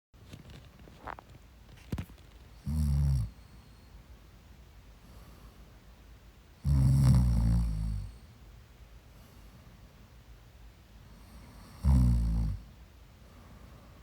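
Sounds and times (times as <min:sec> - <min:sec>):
person snoring: 0:06.6 - 0:08.1, 0:11.5 - 0:12.6.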